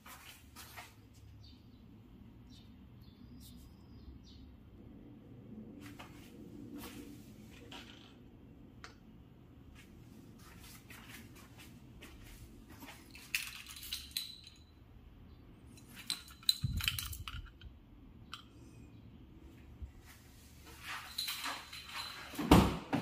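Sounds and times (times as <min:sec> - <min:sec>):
small metal objects clinking: 0:13.1 - 0:14.8, 0:15.8 - 0:17.7.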